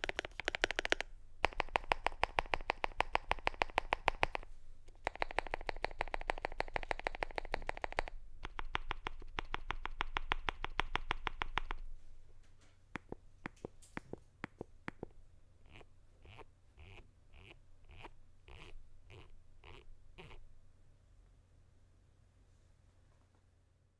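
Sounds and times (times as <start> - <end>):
typing on mechanical keyboard: 0.0 - 11.8.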